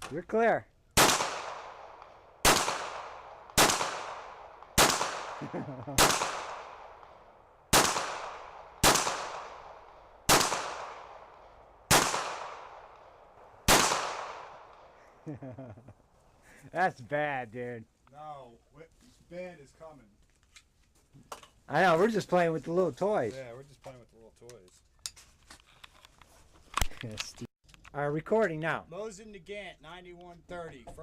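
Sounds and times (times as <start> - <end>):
pistol shots echoing: 1.0 - 15.0.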